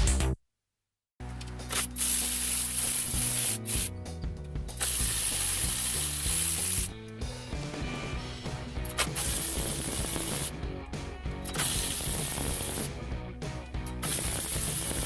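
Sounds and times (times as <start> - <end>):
quiet background music: 1.2 - 15.0
spraying hiss: 1.7 - 3.9, 4.8 - 6.9, 8.4 - 10.5, 11.5 - 12.9, 14.0 - 15.0.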